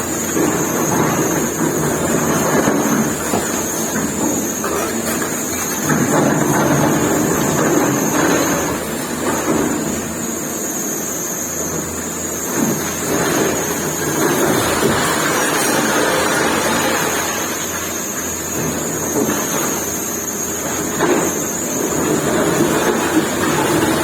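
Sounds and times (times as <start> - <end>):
thin high whine: 13.5 - 20.2.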